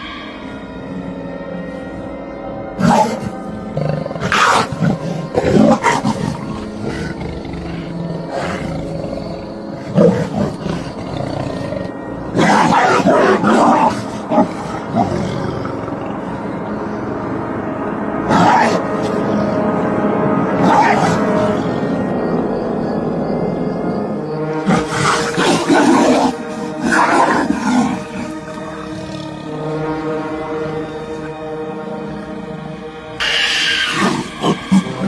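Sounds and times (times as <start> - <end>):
background music: 0.0 - 35.0
animal snarling and growling: 2.8 - 16.2, 24.6 - 29.4, 33.2 - 35.0.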